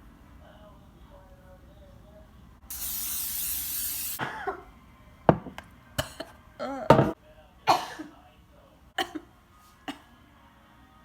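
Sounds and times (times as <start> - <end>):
aerosol can hissing: 2.7 - 4.2.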